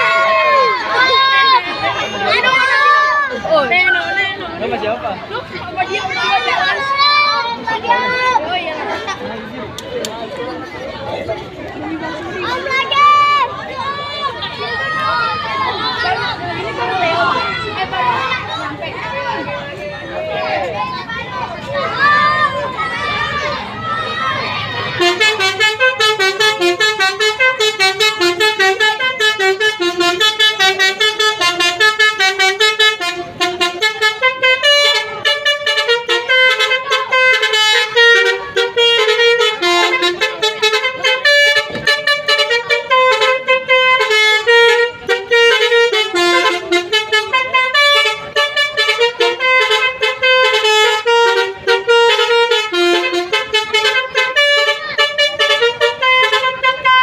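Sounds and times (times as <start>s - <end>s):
musical bus horn tune: 24.8s - 57.0s.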